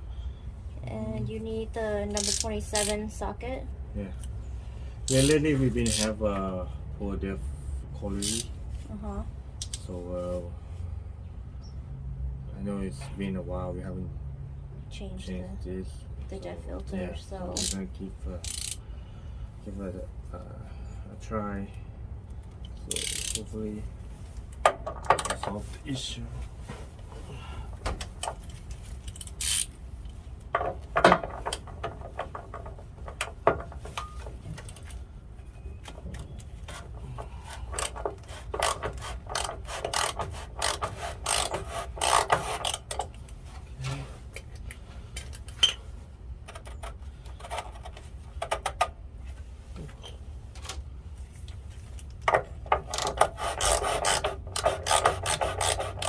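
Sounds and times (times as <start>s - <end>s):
ratchet wrench clicking: 2.2s - 3.0s, 5.0s - 6.2s, 8.2s - 8.5s, 9.6s - 9.9s, 17.6s - 17.8s, 18.4s - 18.8s, 22.9s - 23.5s, 29.1s - 29.7s, 37.7s - 43.2s, 52.2s - 56.0s
metal and plastic scraping: 35.8s - 43.2s, 52.3s - 56.0s.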